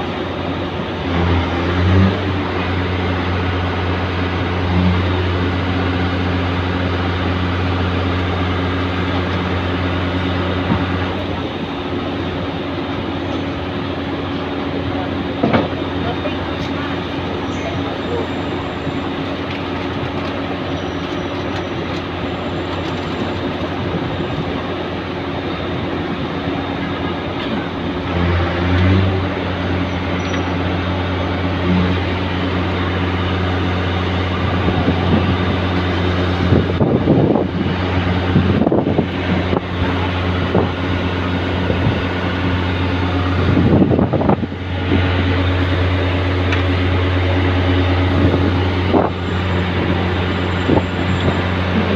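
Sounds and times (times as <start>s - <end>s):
ship engines droning: 0.0s - 51.9s
mechanical noise: 15.3s - 25.4s, 28.7s - 51.9s.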